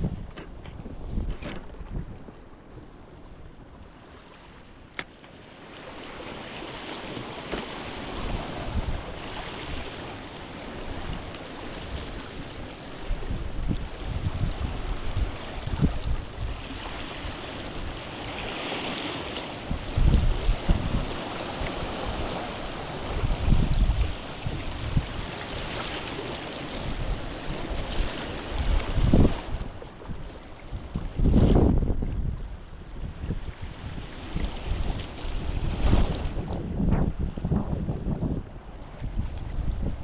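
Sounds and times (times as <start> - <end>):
wind rumbling on microphone: 0.0 - 5.0, 5.6 - 40.0
sea surf washing on shore: 0.0 - 40.0.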